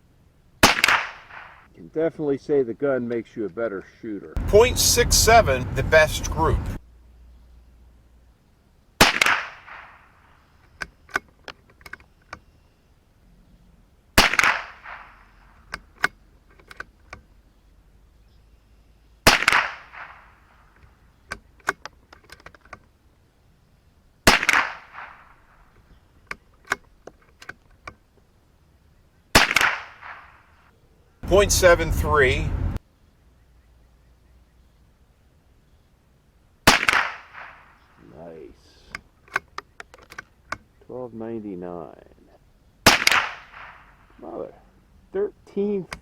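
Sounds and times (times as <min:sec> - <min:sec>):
rifle shots ringing out: 0:00.6 - 0:01.7, 0:09.0 - 0:10.4, 0:14.2 - 0:15.6, 0:19.2 - 0:20.4, 0:24.2 - 0:25.6, 0:29.3 - 0:30.6, 0:36.7 - 0:37.9, 0:42.8 - 0:44.1.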